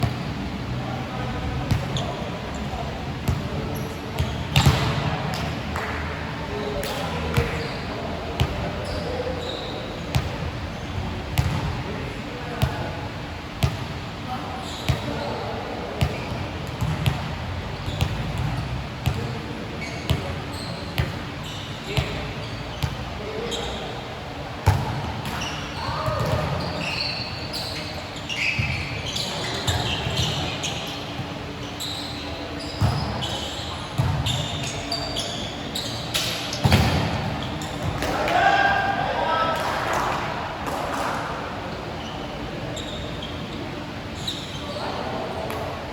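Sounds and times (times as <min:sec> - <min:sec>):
background murmur: 0:00.0 - 0:45.9
basketball bouncing on court: 0:04.2 - 0:05.9, 0:11.4 - 0:11.7, 0:16.0 - 0:17.3, 0:17.9 - 0:19.3, 0:24.6 - 0:26.7, 0:32.8 - 0:33.3, 0:34.0 - 0:34.7, 0:36.6 - 0:38.1
shoes squeaking: 0:25.2 - 0:38.7, 0:42.0 - 0:45.2
voices calling out: 0:25.3 - 0:45.6.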